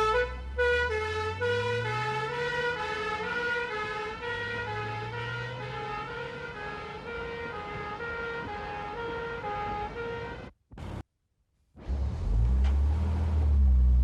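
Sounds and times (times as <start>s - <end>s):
police two-tone siren: 0.0s - 10.4s.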